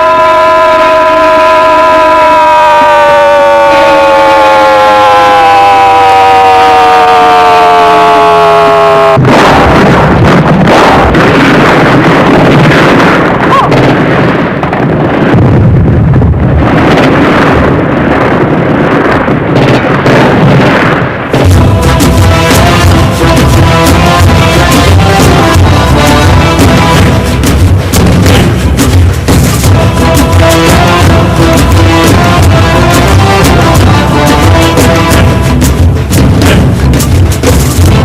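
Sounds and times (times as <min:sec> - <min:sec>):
air-raid siren wailing: 0:00.0 - 0:09.2, 0:21.5 - 0:27.2
rough rumbling roar: 0:00.0 - 0:38.0.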